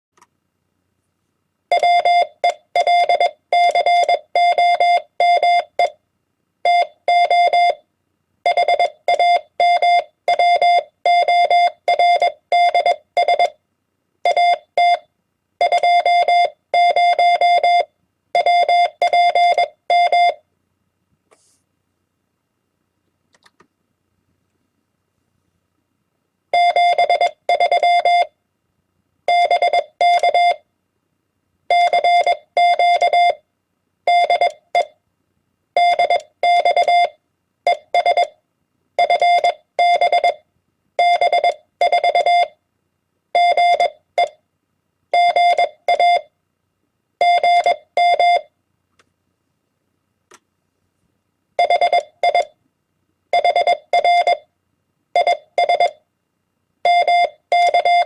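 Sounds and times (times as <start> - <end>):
morse code beeps: 1.7 - 6.0, 6.7 - 7.8, 8.5 - 13.6, 15.6 - 20.4, 26.6 - 28.3, 29.3 - 30.6, 31.7 - 33.4, 34.1 - 35.0, 35.8 - 38.4, 39.0 - 40.4, 41.0 - 42.6, 43.4 - 44.4, 45.2 - 46.3, 47.2 - 48.5, 51.6 - 52.6, 53.4 - 54.4, 55.2 - 56.0, 56.9 - 58.0.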